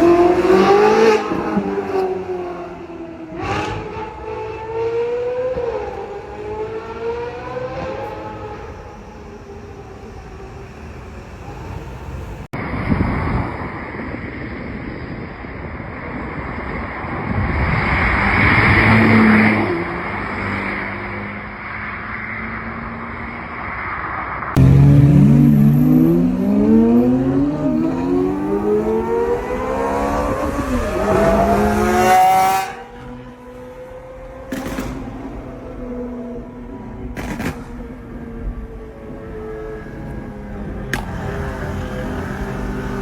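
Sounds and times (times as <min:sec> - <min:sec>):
car engine revving: 0:00.0 - 0:10.0, 0:24.6 - 0:37.6, 0:39.5 - 0:43.0
road and wind noise: 0:00.0 - 0:43.0.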